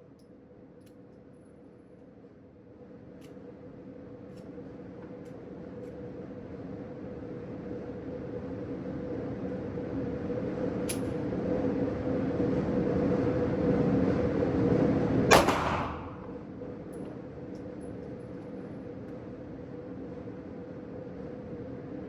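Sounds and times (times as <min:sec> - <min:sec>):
sharp bang with ringing tail: 0:15.3 - 0:16.4.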